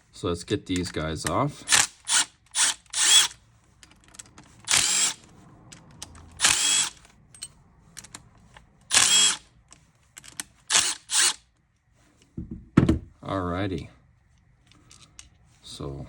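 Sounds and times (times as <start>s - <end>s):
power drill whirring: 1.7s - 3.4s, 4.5s - 5.2s, 6.4s - 7.0s, 8.9s - 9.4s, 10.7s - 11.4s.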